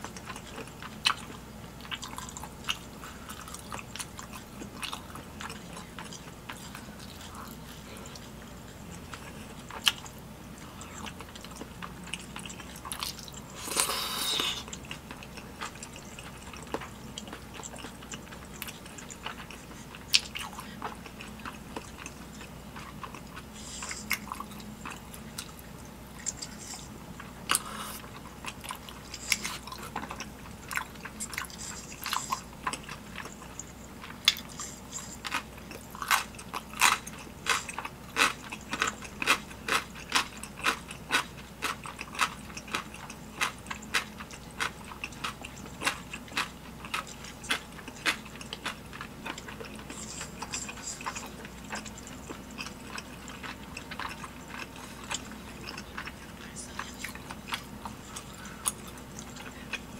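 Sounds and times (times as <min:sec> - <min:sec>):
chewing with wet mouth clicks: 0:00.0 - 0:59.9.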